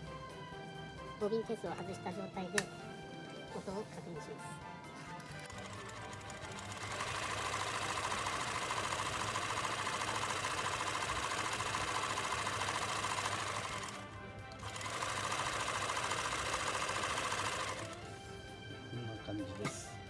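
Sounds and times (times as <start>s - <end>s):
sewing machine running: 1.9s - 18.3s.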